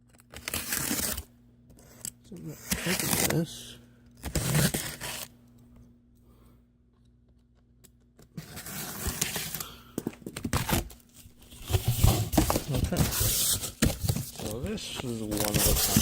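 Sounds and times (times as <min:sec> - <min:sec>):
packaging tearing and crinkling: 0:00.1 - 0:01.3, 0:02.6 - 0:03.5, 0:04.2 - 0:05.3, 0:10.4 - 0:16.0.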